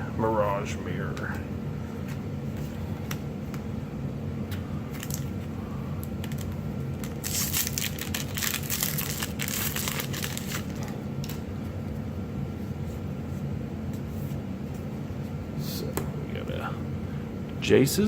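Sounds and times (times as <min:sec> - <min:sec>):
steady low hum: 0:00.0 - 0:18.0
foil wrapper crinkling: 0:05.0 - 0:05.4, 0:06.0 - 0:11.4.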